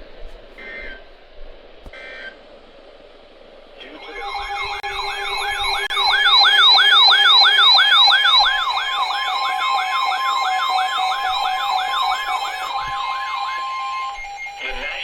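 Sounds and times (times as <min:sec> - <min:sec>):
electronic siren yelping: 0:01.9 - 0:02.4, 0:03.8 - 0:15.0.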